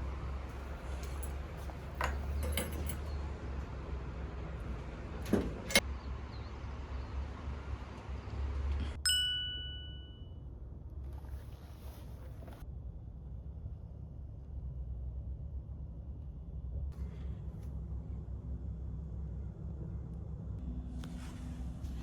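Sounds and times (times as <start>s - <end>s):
bright metallic ding: 9.0s - 10.3s.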